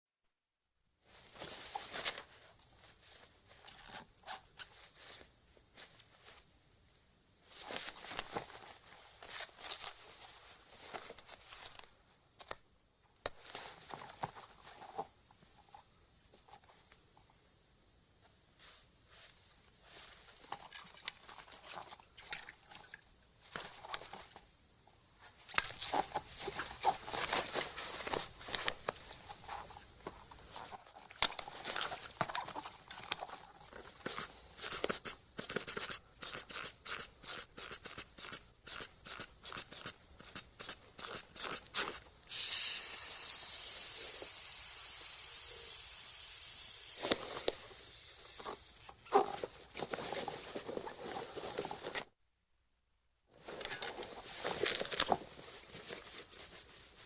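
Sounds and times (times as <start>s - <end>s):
velcro tearing: 34.0s - 42.8s
rubber bulb pumping: 34.0s - 49.2s
air hissing out: 34.1s - 49.0s
cuff rustling: 47.0s - 52.0s, 53.3s - 57.0s.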